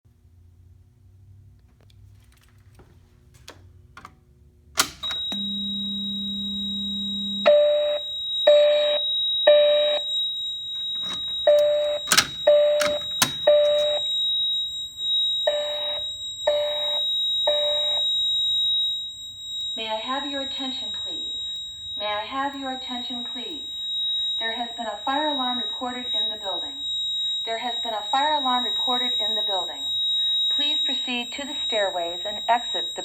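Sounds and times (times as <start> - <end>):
sharp clicks: 4.8 - 5.4, 10.8 - 14.0
alarm panel click: 4.8 - 9.0, 10.7 - 14.2
pulsing evacuation tone: 4.8 - 33.0.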